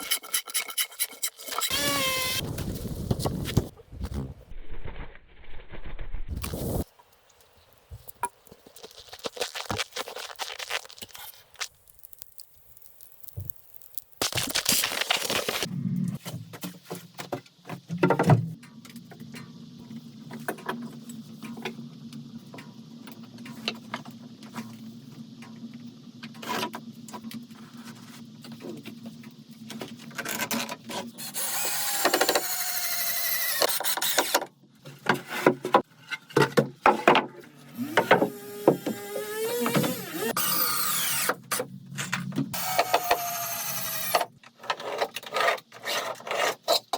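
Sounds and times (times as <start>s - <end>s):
power drill motor whining: 1.7s - 2.4s, 37.8s - 41.4s, 42.6s - 44.2s.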